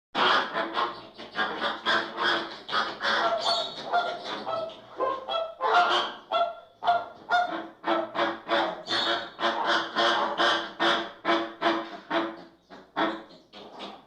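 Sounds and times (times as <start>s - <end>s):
flamingos honking: 8.7s - 10.8s.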